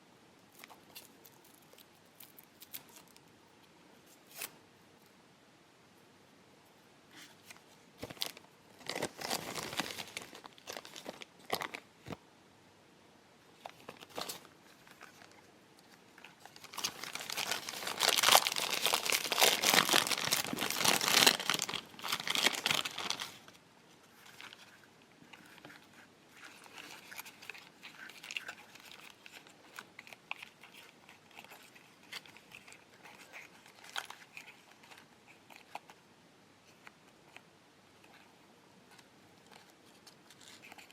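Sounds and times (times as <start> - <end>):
plastic bags crinkling: 8.0 - 11.8, 16.3 - 23.6.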